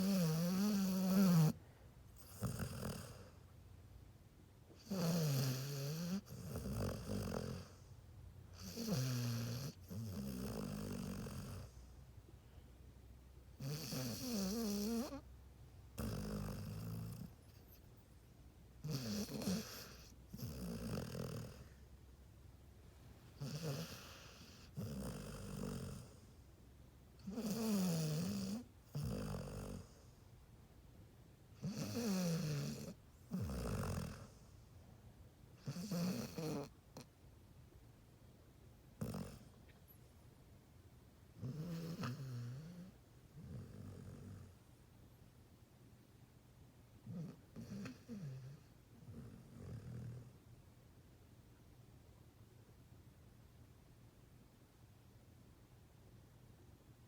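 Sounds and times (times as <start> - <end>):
dog snoring: 0.0 - 1.6, 2.2 - 3.5, 4.7 - 7.9, 8.5 - 11.9, 13.6 - 15.3, 15.9 - 17.8, 18.8 - 21.8, 23.4 - 26.4, 27.2 - 30.2, 31.6 - 34.7, 35.6 - 37.1, 39.0 - 39.6, 41.4 - 44.6, 47.0 - 50.4.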